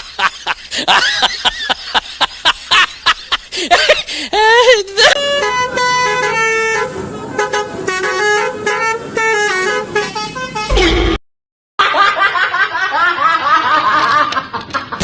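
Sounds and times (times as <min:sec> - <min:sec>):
multi-tone bus horn tune: 0:05.0 - 0:11.2.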